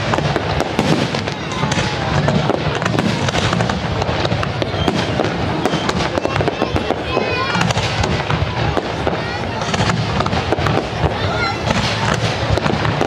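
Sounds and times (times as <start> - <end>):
firework whistles: 0.0 - 13.0
fireworks crackling and banging: 0.0 - 13.0.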